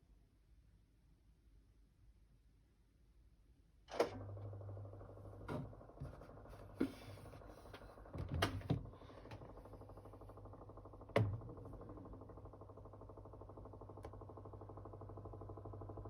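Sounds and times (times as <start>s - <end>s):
washing machine humming: 3.9s - 16.0s.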